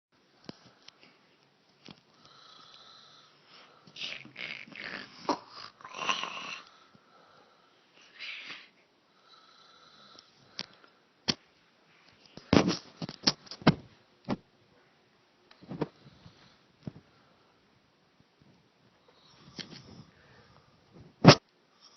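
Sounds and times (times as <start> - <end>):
woman snoring: 2.2 - 3.4, 4.0 - 6.9, 9.2 - 10.3.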